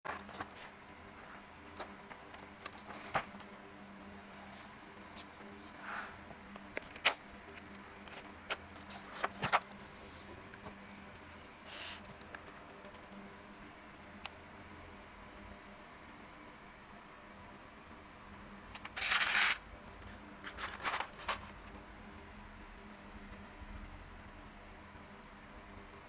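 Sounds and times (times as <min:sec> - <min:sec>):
rustling scrapes: 0:00.1 - 0:06.2, 0:18.8 - 0:21.6.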